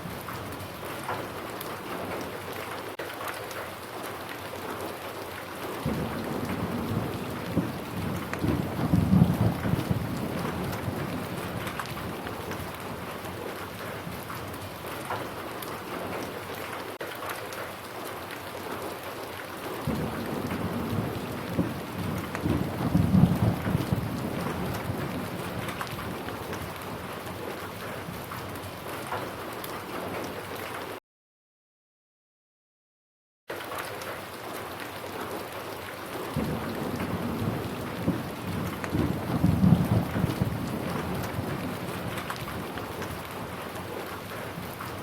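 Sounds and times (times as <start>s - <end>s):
steady rain falling: 0.0s - 31.0s, 33.5s - 45.0s
low rumble of thunder: 5.8s - 16.4s, 19.8s - 30.3s, 36.3s - 45.0s.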